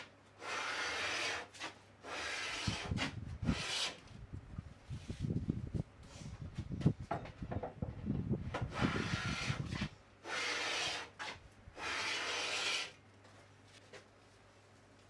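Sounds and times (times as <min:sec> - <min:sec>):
hand tool scraping wood: 0:00.0 - 0:04.0, 0:08.6 - 0:13.0.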